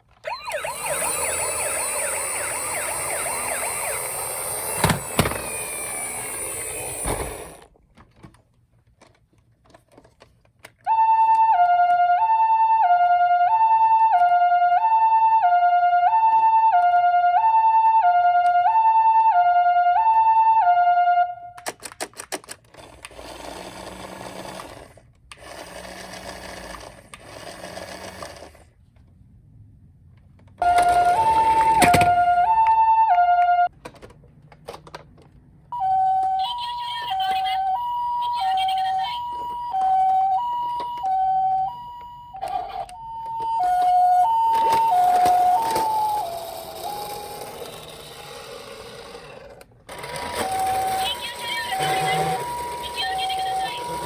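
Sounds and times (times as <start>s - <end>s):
ambulance two-tone siren: 0.2s - 7.6s, 10.8s - 21.6s, 30.6s - 33.7s, 35.7s - 48.2s, 50.2s - 54.0s
loud noisy sound: 0.3s - 7.6s.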